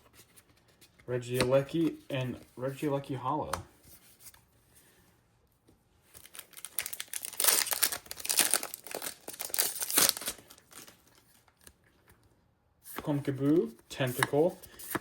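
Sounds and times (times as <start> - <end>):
foil wrapper crinkling and tearing: 6.1 - 11.8.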